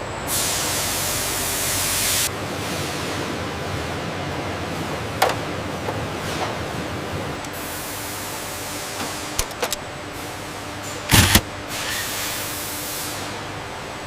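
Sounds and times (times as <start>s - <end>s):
factory machinery humming: 0.0s - 14.0s
sharp clicks: 11.1s - 11.5s.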